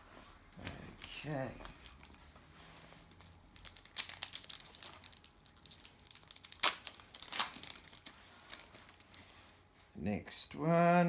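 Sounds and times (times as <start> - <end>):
plastic packet crinkling and tearing: 0.6 - 2.3, 3.1 - 9.2.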